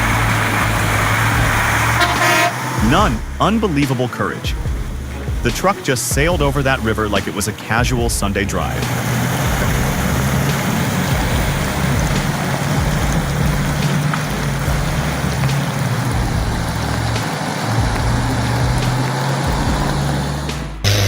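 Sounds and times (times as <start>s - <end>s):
water rushing and splashing: 0.0s - 20.8s
truck engine running: 0.0s - 21.0s.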